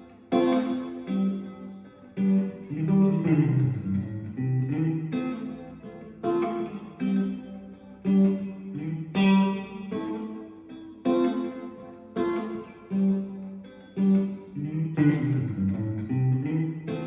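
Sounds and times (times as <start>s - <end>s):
electric guitar picked chords: 0.0s - 17.0s
electric guitar single notes: 0.0s - 17.0s.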